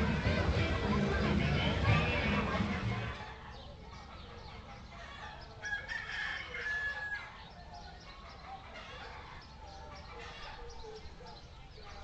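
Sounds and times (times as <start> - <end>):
rooster crowing: 5.2 - 7.4.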